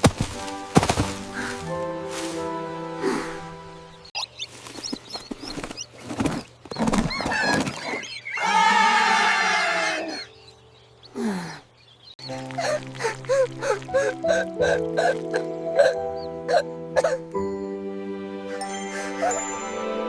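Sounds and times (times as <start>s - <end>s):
loud animal-like cry: 7.2s - 10.3s.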